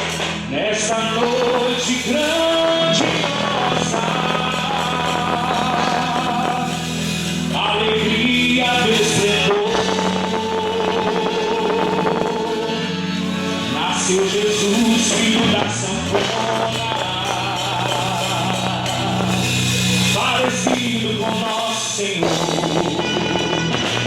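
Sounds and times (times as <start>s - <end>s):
folk dance music: 0.0s - 24.0s
person singing: 0.0s - 24.0s.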